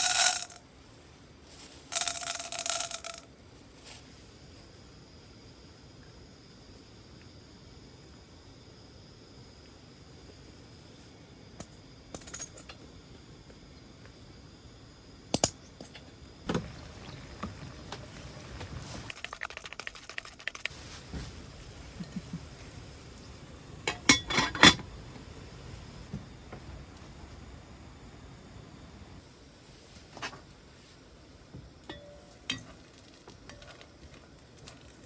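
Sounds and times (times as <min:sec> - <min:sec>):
cookware clicking and clinking: 0:23.9 - 0:24.8.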